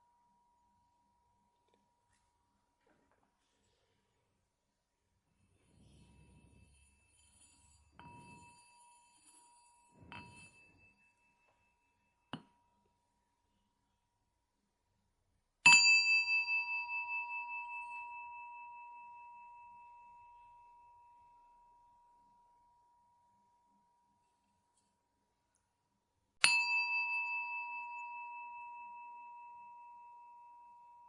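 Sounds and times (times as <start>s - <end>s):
small metal bell ringing: 5.6s - 12.8s, 15.7s - 21.3s, 26.4s - 31.0s.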